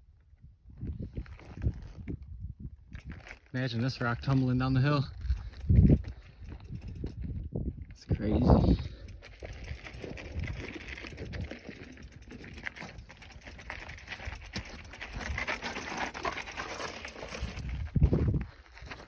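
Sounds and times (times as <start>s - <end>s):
footsteps crunching on gravel: 8.8s - 19.0s.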